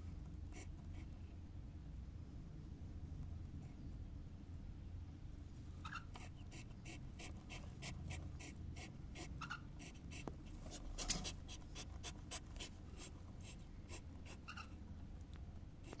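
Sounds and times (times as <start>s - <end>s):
cockatiel chirping: 5.8s - 6.7s, 9.4s - 10.0s, 14.4s - 14.7s.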